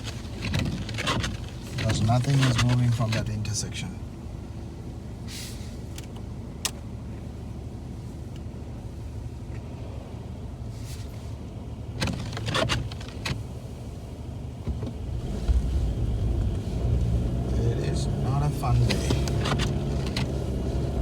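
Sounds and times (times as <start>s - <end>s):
car engine and road hum: 0.0s - 21.0s
rattling: 15.0s - 20.4s.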